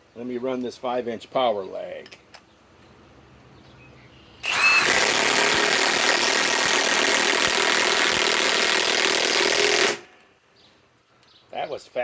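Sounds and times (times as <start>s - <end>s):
impact wrench hammering: 4.4s - 10.2s.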